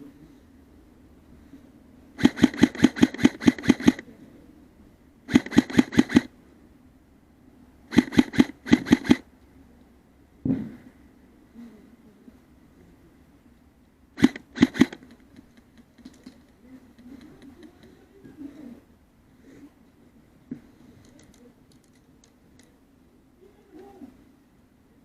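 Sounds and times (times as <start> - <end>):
airsoft gun rapid firing: 2.2 - 4.0, 5.3 - 6.3, 7.9 - 9.3, 14.2 - 15.2
dull thump: 10.4 - 10.9.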